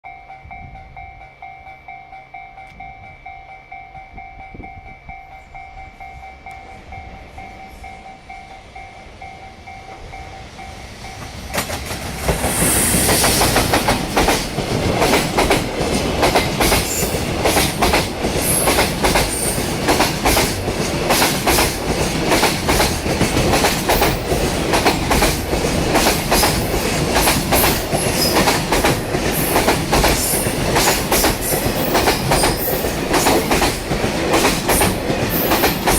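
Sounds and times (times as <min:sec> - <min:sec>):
train wheels clattering over rail joints: 0:11.2 - 0:35.9.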